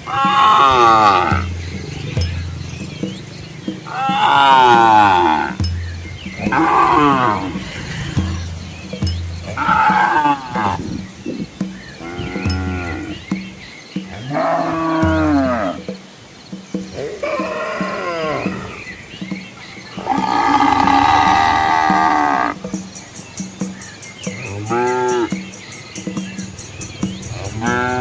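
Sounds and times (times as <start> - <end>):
cattle mooing: 0.1 - 5.6, 6.4 - 8.8, 9.4 - 11.0, 12.0 - 13.2, 20.0 - 22.6, 27.2 - 28.0.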